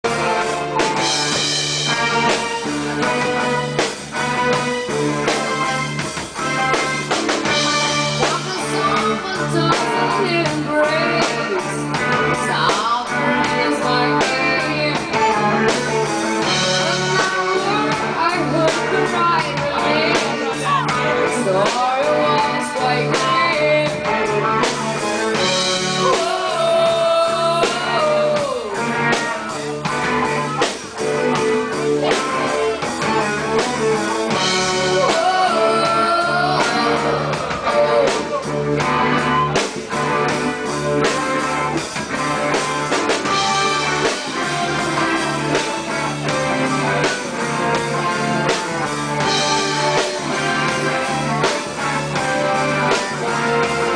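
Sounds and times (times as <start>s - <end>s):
live rock band playing: 0.0s - 53.9s
person singing: 7.8s - 24.6s, 25.4s - 30.9s, 31.6s - 40.3s, 42.6s - 53.9s.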